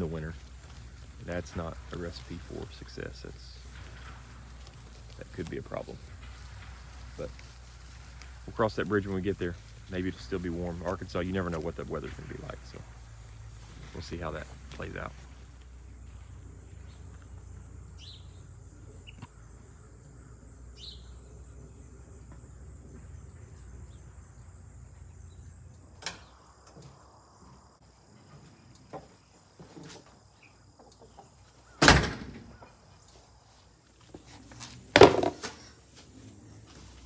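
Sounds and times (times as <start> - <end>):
bird chirps: 16.0 - 25.6
loud thump: 35.0 - 35.5.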